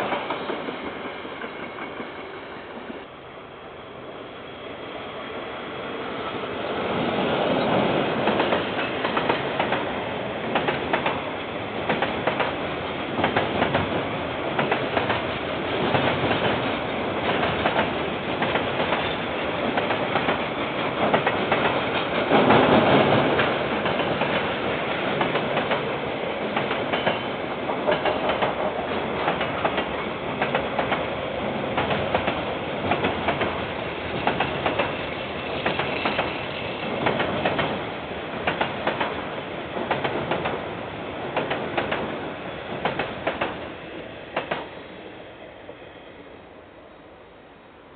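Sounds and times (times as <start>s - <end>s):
train wheels clacking over rail joints: 7.6s - 14.0s, 14.6s - 37.8s, 38.4s - 39.2s, 39.8s - 40.6s, 41.3s - 42.2s, 42.8s - 43.7s.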